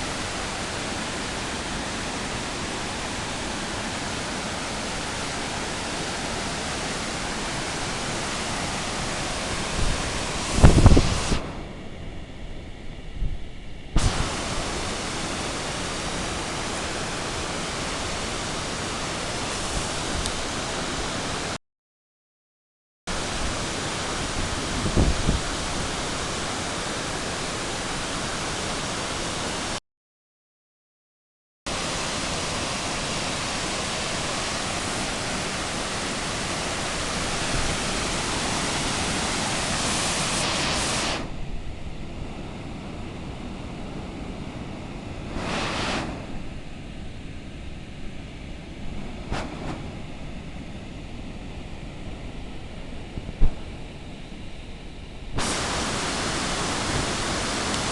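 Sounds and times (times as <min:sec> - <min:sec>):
waterfall rushing: 0:00.0 - 0:11.8, 0:14.0 - 0:21.6, 0:23.1 - 0:29.8, 0:31.7 - 0:41.4, 0:55.4 - 0:57.9.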